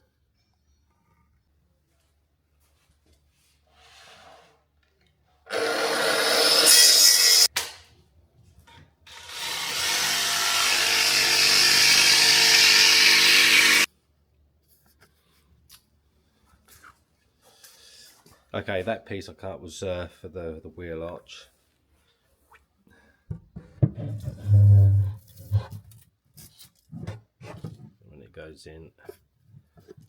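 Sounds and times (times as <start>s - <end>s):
power saw cutting wood: 5.5s - 7.5s, 9.1s - 13.9s.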